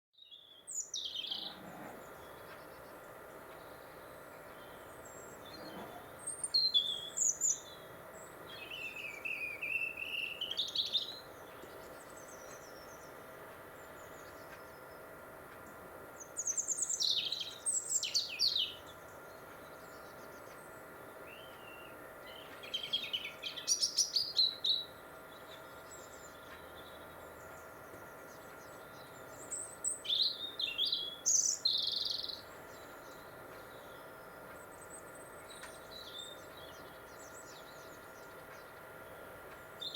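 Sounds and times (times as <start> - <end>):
faint steady hum: 0.2 - 39.9
robin singing: 0.2 - 39.9.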